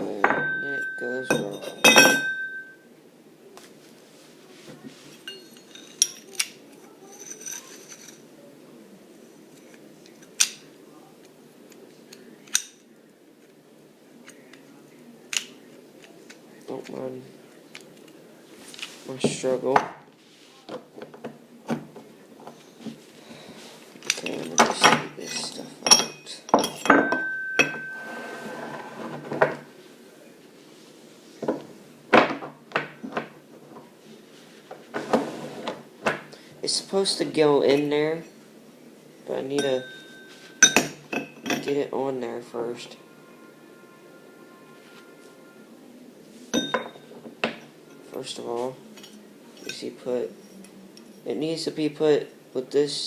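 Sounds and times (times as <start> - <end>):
struck metal part ringing: 0.2 - 2.8, 25.9 - 28.0, 39.5 - 41.8, 46.6 - 48.2
metal parts knocking and clinking: 24.0 - 27.9, 39.6 - 41.8, 46.6 - 47.6.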